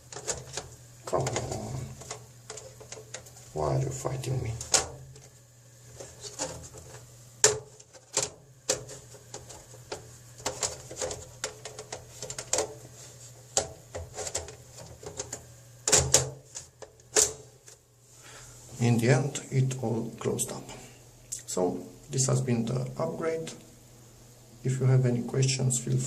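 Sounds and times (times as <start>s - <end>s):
computer case clicks and knocks: 4.5s - 5.3s, 6.2s - 12.8s, 13.6s - 17.5s.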